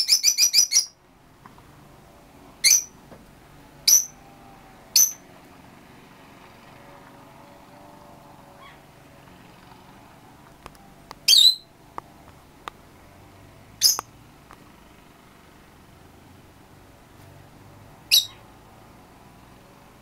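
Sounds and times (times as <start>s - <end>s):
small bird chirping: 0.0s - 1.0s, 2.6s - 3.0s, 3.8s - 4.2s, 4.9s - 5.3s, 11.2s - 11.7s, 13.8s - 14.1s, 18.1s - 18.5s.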